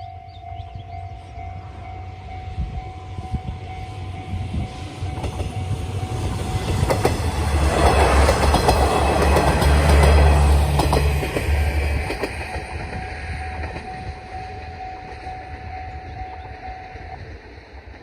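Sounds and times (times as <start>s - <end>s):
level crossing warning bell: 0.0s - 5.9s, 12.4s - 17.6s
diesel railcar engines: 0.0s - 18.0s
wheels clacking over rail joints: 4.9s - 15.3s.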